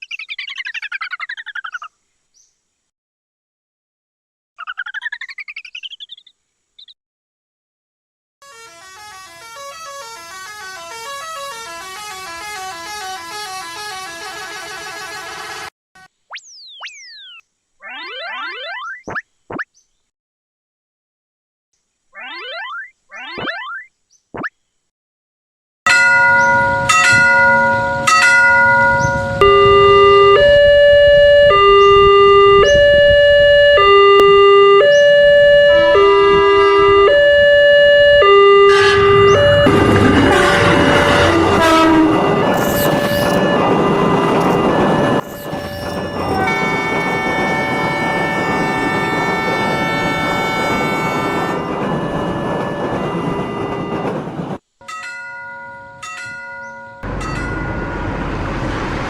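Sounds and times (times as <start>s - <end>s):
horn-like melodies: 8.4s - 15.7s, 25.9s - 54.4s
struck bell tones: 25.9s - 29.5s, 39.0s - 48.6s, 54.8s - 58.3s
electronic two-tone warning: 29.0s - 54.2s.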